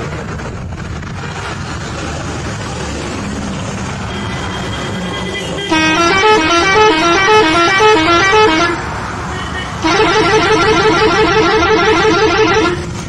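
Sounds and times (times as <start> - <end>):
bus engine: 0.0 - 13.0
road noise: 0.0 - 13.0
bus musical horn tune: 5.4 - 13.0.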